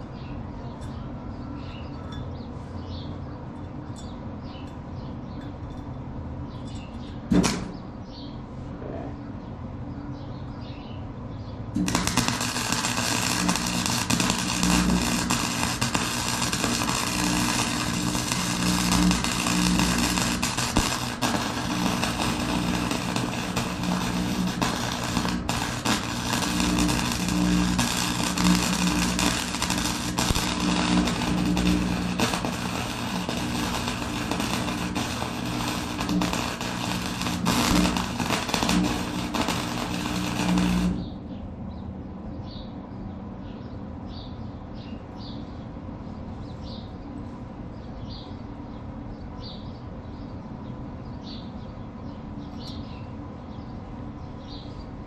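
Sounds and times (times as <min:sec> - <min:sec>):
steady low hum: 0:00.0 - 0:55.0
welding arc crackling: 0:07.3 - 0:07.8, 0:11.8 - 0:41.2.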